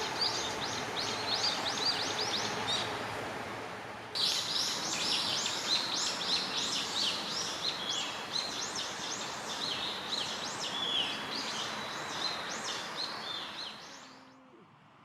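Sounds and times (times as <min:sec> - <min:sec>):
birds chirping: 0:00.0 - 0:03.0.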